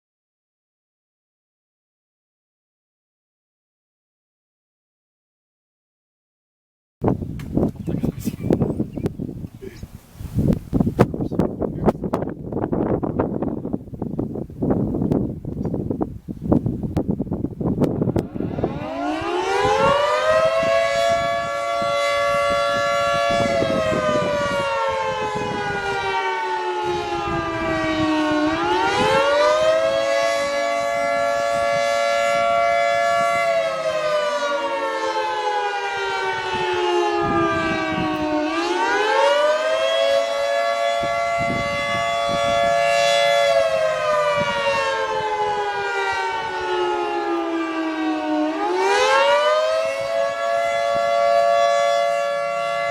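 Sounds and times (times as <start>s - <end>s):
distant siren: 7.1s - 9.4s, 11.0s - 15.2s, 15.9s - 52.9s
dual-tone warning siren wailing: 7.6s - 9.4s, 11.2s - 15.3s, 16.9s - 52.9s.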